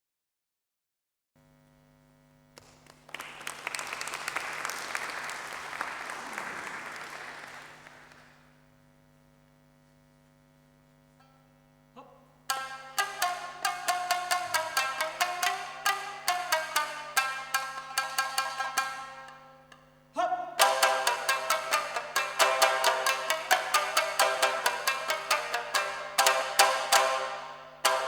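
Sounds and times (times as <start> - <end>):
audience applauding: 2.6 - 8.5
shamisen plucked notes: 12.5 - 28.0.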